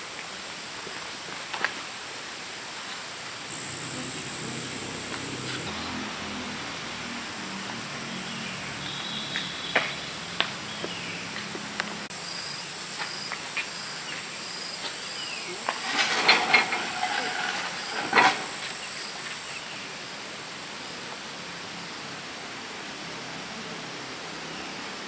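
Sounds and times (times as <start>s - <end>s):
outdoor hiss: 0.0s - 25.0s
insects chirping: 3.3s - 20.1s
high steady whine: 3.5s - 11.0s
knocks and clattering: 15.7s - 18.6s.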